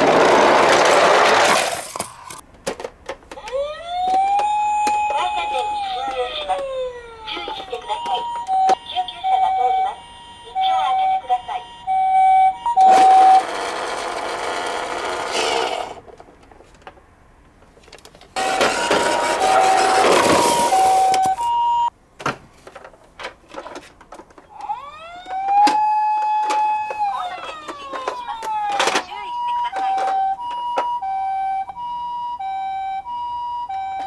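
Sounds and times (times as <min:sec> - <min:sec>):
toy siren wailing up: 0:03.3 - 0:14.0, 0:18.4 - 0:21.9, 0:24.5 - 0:34.0
toy electronic two-tone siren: 0:03.3 - 0:14.6, 0:18.4 - 0:21.9, 0:24.5 - 0:34.0.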